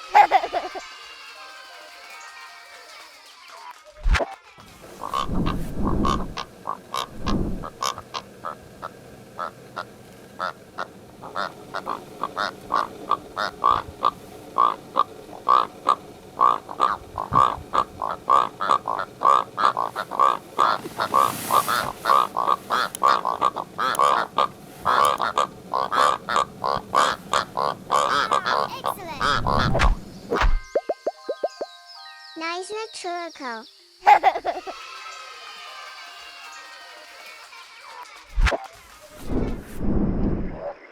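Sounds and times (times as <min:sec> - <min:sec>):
bird calling short calls: 0:05.0 - 0:30.4.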